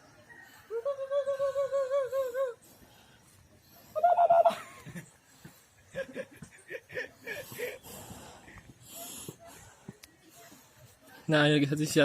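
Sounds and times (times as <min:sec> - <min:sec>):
people laughing: 0:03.9 - 0:05.2, 0:05.8 - 0:07.9.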